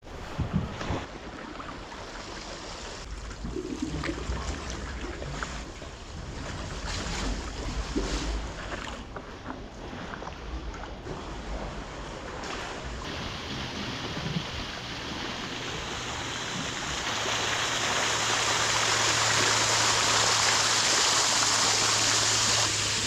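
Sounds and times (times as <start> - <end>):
wind rumbling on microphone: 0.0 - 1.1
sea water splashing and lapping: 0.0 - 23.0
small water splashes: 0.0 - 23.0.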